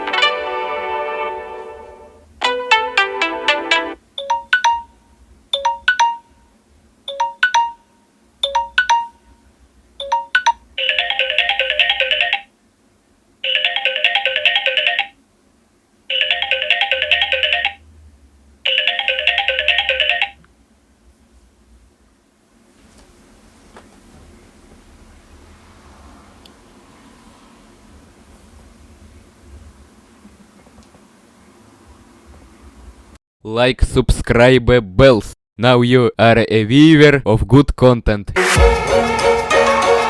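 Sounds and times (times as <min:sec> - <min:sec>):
warbling telephone trill: 0:10.0 - 0:12.5, 0:13.4 - 0:15.1, 0:16.1 - 0:17.8, 0:18.7 - 0:20.4.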